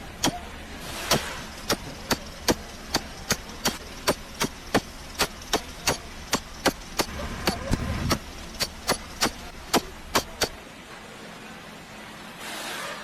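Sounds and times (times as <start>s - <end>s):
ringing hammer strikes: 0.2s - 0.5s, 1.1s - 10.6s.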